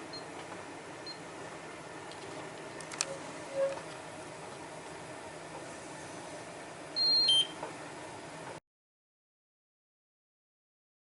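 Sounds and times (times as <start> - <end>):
low background hum: 0.0 - 8.6.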